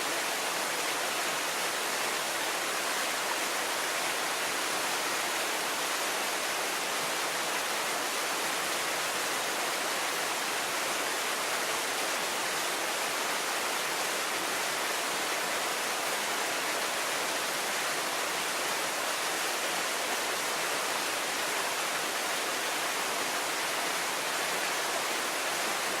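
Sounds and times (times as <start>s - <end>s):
small waterfall splashing: 0.0s - 26.0s.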